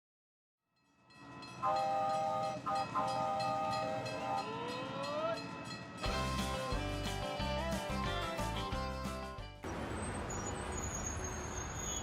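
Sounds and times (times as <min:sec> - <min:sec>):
rhythmic train clatter: 0:01.0 - 0:08.9
multi-tone train horn: 0:01.6 - 0:05.4.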